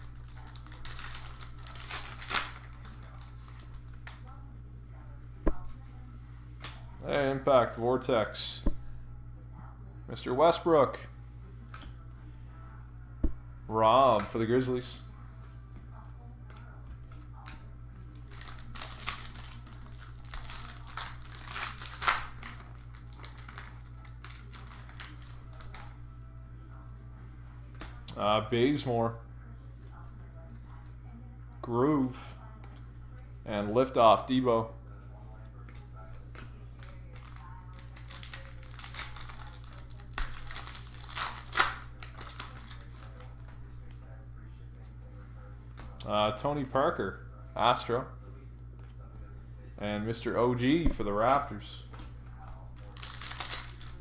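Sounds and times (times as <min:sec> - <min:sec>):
wrapper crinkling: 0:00.0 - 0:04.3, 0:17.4 - 0:26.0, 0:36.1 - 0:44.0, 0:52.6 - 0:54.0
low electrical hum: 0:00.0 - 0:54.0.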